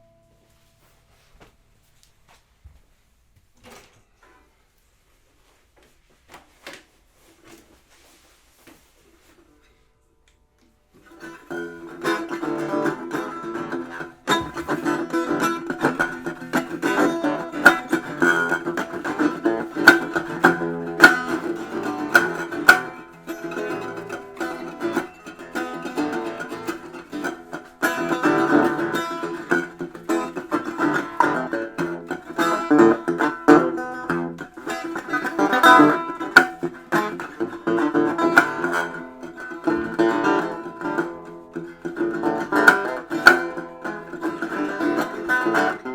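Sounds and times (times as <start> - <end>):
plucked string instrument: 9.3 - 45.9.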